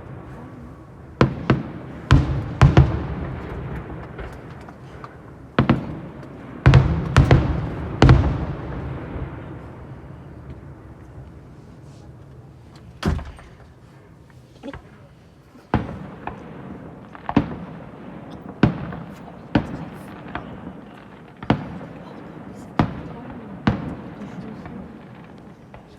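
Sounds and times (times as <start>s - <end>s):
fireworks bangs: 0.0s - 13.8s, 14.7s - 25.9s.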